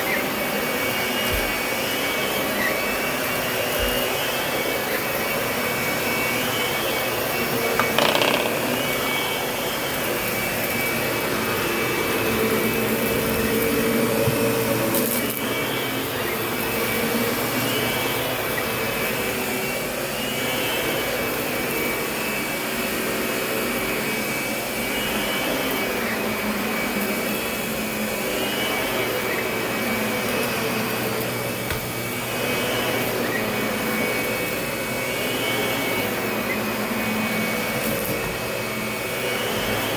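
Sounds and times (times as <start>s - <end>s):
vacuum cleaner motor whine: 0.0s - 39.9s
brief knock: 7.8s - 8.6s.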